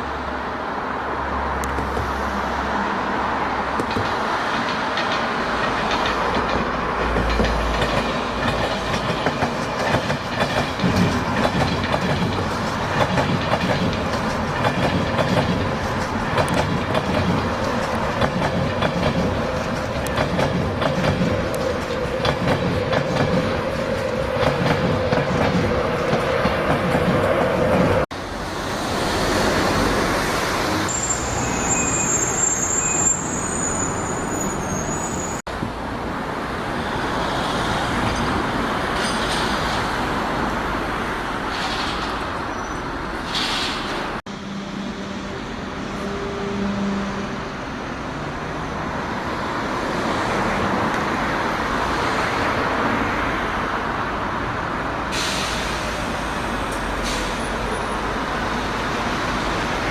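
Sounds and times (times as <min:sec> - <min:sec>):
buses and road traffic: 0:00.0 - 0:59.9
high brake squeal: 0:30.9 - 0:35.4, 0:41.6 - 0:44.0
short air hisses: 0:55.1 - 0:56.1.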